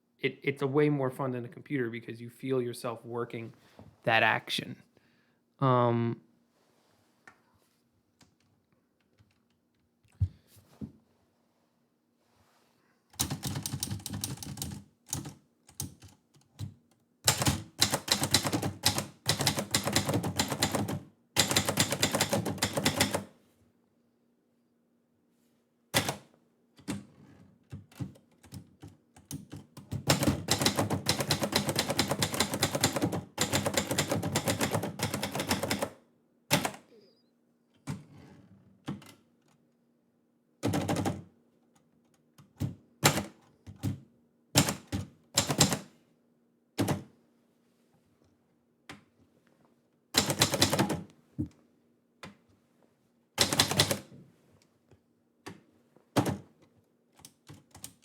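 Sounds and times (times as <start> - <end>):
typewriter keystrokes: 17.3 - 23.3, 26.0 - 26.2, 27.9 - 35.9, 44.6 - 45.8, 50.2 - 51.0, 53.4 - 54.0.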